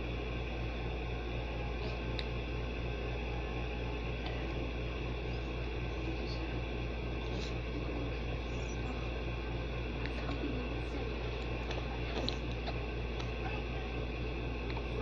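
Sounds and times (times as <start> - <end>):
low pulsing hum: 0.0 - 15.0.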